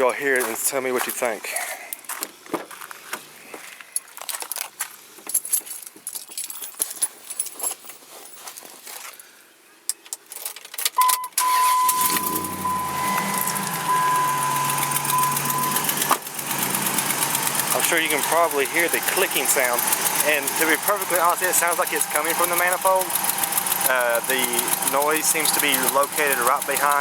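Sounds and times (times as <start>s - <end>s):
keys jangling: 5.3s - 8.5s
steady high tone: 11.0s - 16.2s
truck engine starting and idling: 11.1s - 27.0s
rapid clicking from engine: 11.9s - 27.0s.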